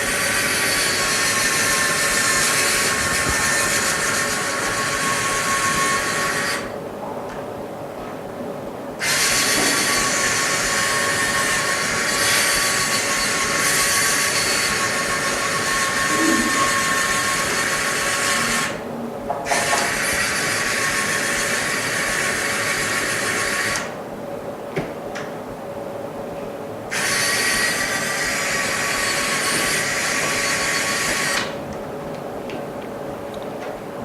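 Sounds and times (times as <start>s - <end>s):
power tool whirring hiss: 9.0s - 18.8s.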